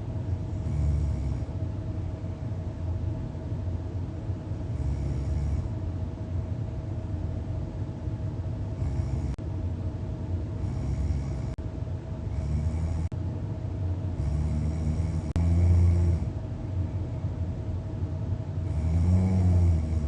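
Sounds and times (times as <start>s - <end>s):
person snoring deeply: 0.5s - 1.5s, 4.7s - 5.7s, 8.8s - 9.4s, 10.6s - 11.6s, 12.3s - 13.1s, 14.2s - 16.4s, 18.6s - 20.0s.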